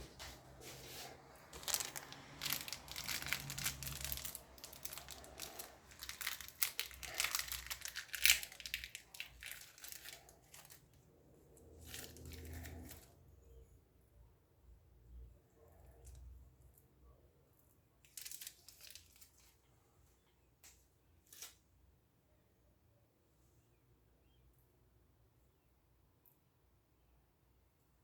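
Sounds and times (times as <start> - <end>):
packaging crinkling and rustling: 0.0 - 11.0, 11.8 - 13.1, 18.1 - 19.6.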